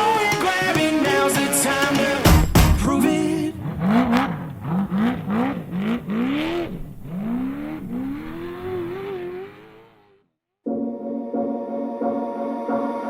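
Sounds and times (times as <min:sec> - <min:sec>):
race vehicle engine revving: 0:00.2 - 0:10.3.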